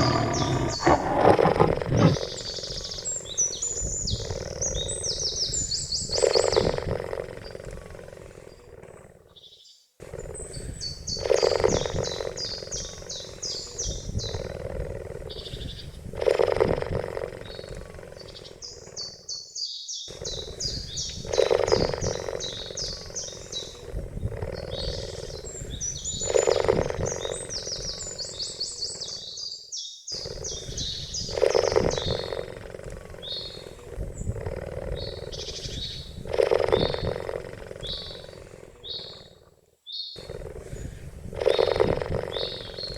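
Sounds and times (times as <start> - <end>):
cheetah calling: 0.0 - 2.4.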